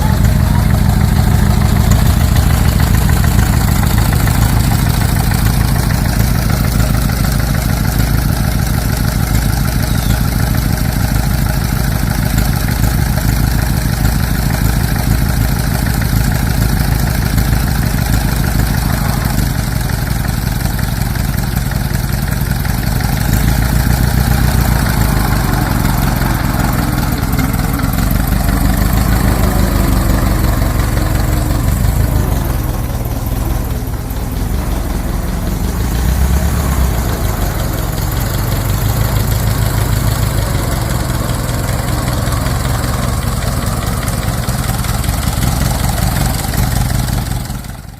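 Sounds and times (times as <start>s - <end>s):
car engine running: 0.0s - 47.9s.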